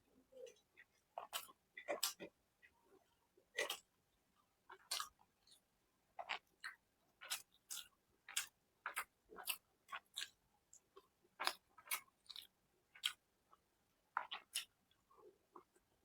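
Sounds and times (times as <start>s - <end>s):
wet chewing and lip-smacking: 0.5s - 2.7s, 3.5s - 3.9s, 4.7s - 5.6s, 6.2s - 13.2s, 14.1s - 15.8s.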